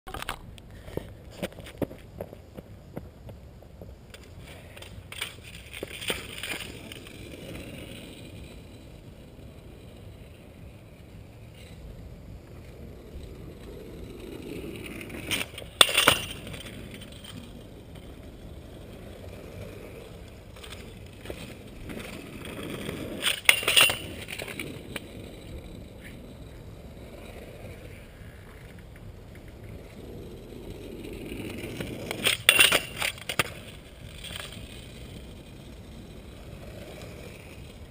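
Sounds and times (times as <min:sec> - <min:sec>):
scooter wheels rolling on pavement: 0:00.1 - 0:37.9
scooter clacks and metal scraping: 0:04.1 - 0:09.0, 0:14.4 - 0:30.0, 0:30.6 - 0:37.9.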